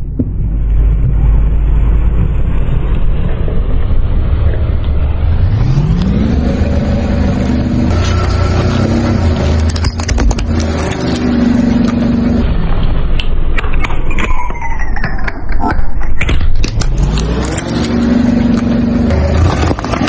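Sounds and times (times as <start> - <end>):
car engine revving: 0.6 - 13.6, 16.6 - 20.0
brittle objects cracking under tyre: 9.4 - 12.0, 15.2 - 20.0.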